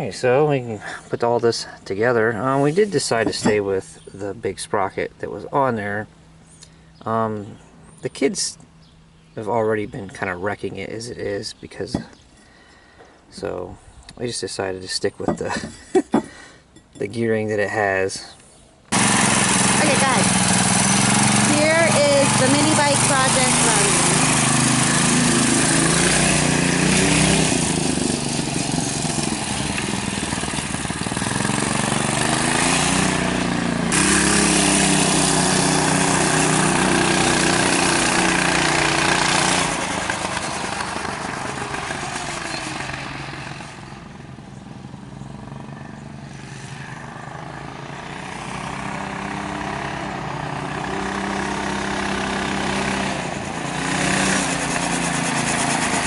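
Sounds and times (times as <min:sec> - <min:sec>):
mini bike engine revving: 0:18.9 - 0:56.0.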